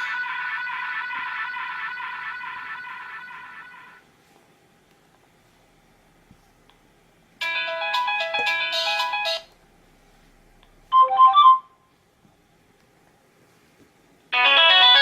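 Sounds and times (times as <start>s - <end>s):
synthesized ringtone melody: 7.4s - 9.5s, 10.9s - 11.7s, 14.4s - 15.0s.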